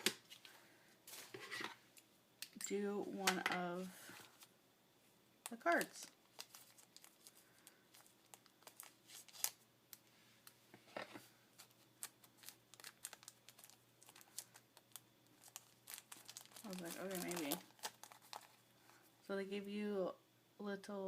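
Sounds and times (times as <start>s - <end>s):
paper and packaging rustling: 5.6s - 9.6s, 11.5s - 19.0s.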